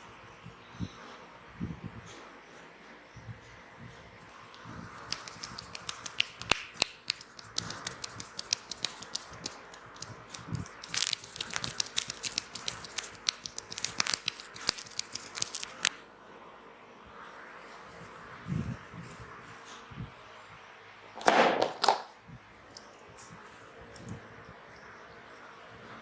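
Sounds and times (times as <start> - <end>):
sharp snapping clicks: 4.3 - 16.0.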